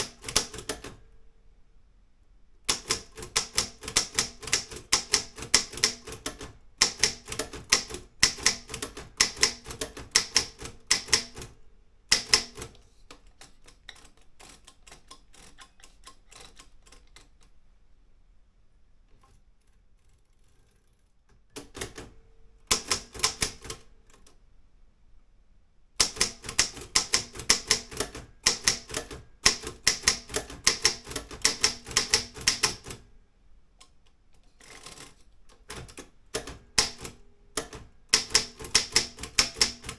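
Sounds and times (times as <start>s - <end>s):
typewriter keys clacking: 2.7s - 17.5s, 26.0s - 33.0s, 34.6s - 39.9s.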